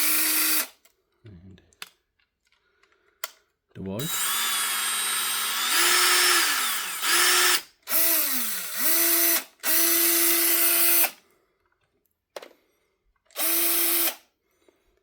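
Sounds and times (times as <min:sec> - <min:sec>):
cordless drill motor whine: 0:00.0 - 0:00.7, 0:04.0 - 0:11.2, 0:13.4 - 0:14.2.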